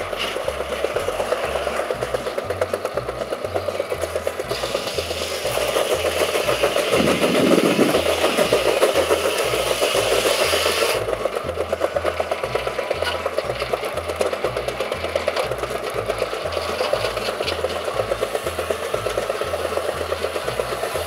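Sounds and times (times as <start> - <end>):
steam engine exhaust beat: 0.0 - 21.0
saw blade rasping through log: 3.6 - 11.2.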